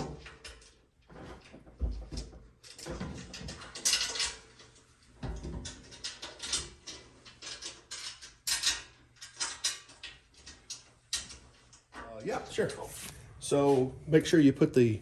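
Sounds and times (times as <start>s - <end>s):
metal parts clinking and rattling: 2.6s - 12.1s.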